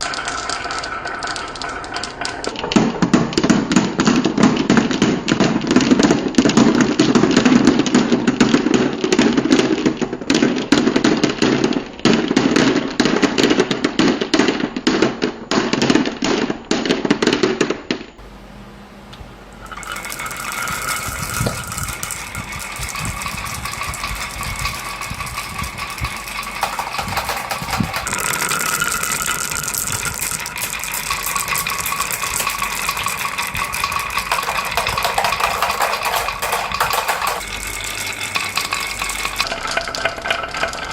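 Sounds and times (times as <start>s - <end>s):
marbles rattling down a marble run: 0.0s - 3.4s, 19.6s - 40.9s
faint ringing: 18.2s - 39.5s.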